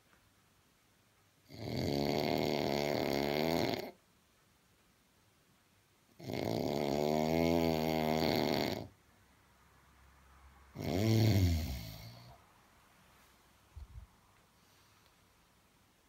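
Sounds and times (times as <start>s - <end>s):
man snoring: 1.5s - 4.0s, 6.2s - 8.9s, 10.8s - 12.4s.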